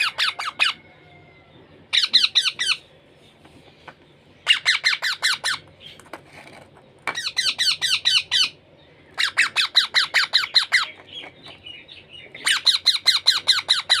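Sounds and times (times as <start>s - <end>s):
parrot chick squawking: 0.0s - 1.2s, 1.9s - 2.8s, 4.4s - 5.7s, 7.1s - 8.6s, 9.2s - 11.3s, 12.4s - 14.0s.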